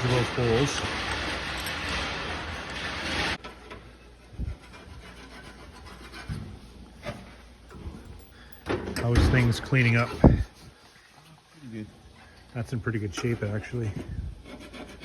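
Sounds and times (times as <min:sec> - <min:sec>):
rubbing scraping noise: 0:00.0 - 0:03.4.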